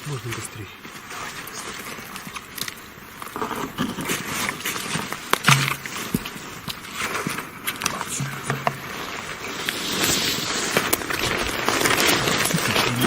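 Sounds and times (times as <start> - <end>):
footsteps crunching outdoors: 0.0 - 13.0.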